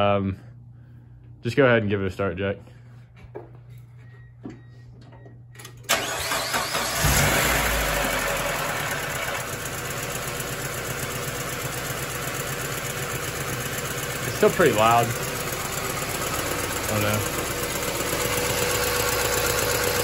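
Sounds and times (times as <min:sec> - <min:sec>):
car starter cranking: 0:05.6 - 0:09.1
car engine idling with lifter tick: 0:08.4 - 0:20.0.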